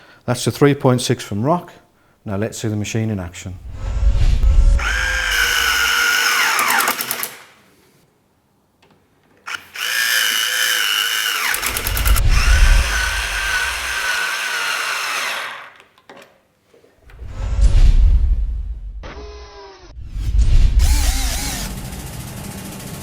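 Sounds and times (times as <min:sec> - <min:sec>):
cordless screwdriver motor whining: 0:04.8 - 0:07.4, 0:09.5 - 0:15.8, 0:20.8 - 0:21.8.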